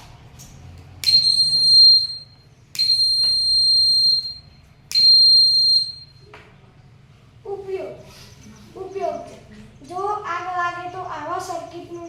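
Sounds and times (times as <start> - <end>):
fire alarm buzzer beeping: 1.0 - 6.3.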